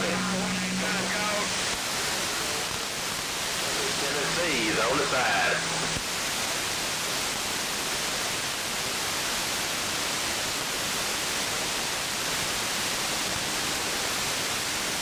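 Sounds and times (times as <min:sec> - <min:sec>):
radio static hiss: 0:00.0 - 0:07.3.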